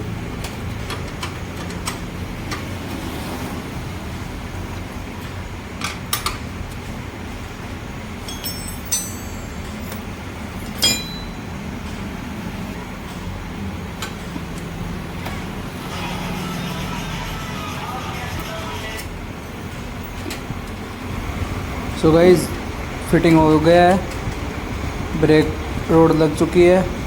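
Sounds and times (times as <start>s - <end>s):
low rumble of traffic: 0.0s - 27.0s
metal tools clinking: 8.2s - 11.6s.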